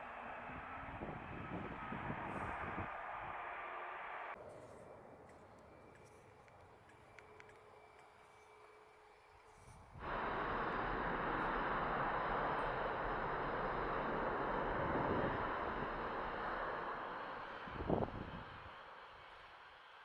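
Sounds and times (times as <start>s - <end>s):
jet engines roaring: 0.0s - 4.4s, 9.9s - 19.6s.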